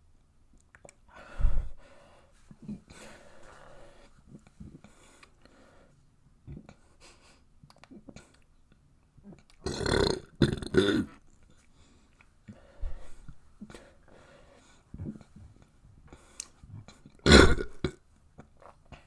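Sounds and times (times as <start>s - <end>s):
person burping loudly: 9.6s - 11.1s, 17.2s - 18.0s.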